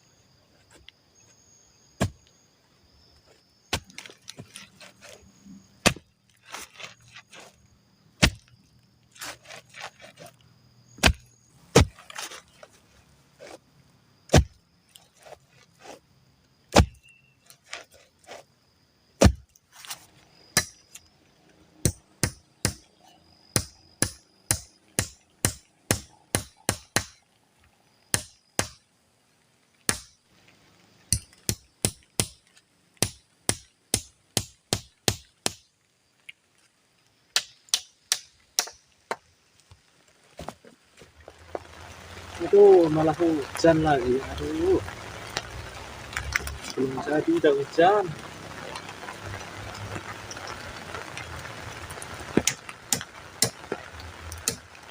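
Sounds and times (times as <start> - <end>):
faint high whine: 0.0 - 14.3
tool chopping wood: 2.0 - 2.2, 3.7 - 4.2, 5.8 - 6.1, 8.2 - 8.5, 11.0 - 12.1, 14.3 - 14.6, 16.7 - 17.0, 19.2 - 19.5, 20.6 - 20.8, 21.8 - 22.8, 23.6 - 27.2, 28.1 - 28.8, 29.9 - 30.2, 31.1 - 35.7, 37.3 - 39.2, 52.4 - 53.6, 54.4 - 54.6.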